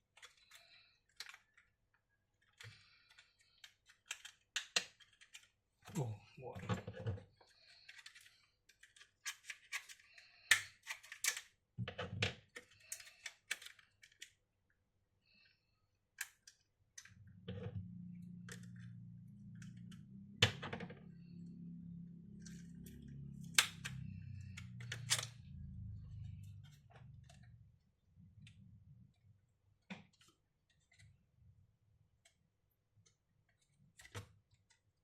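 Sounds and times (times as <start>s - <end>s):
low steady hum: 17.4s - 29.4s.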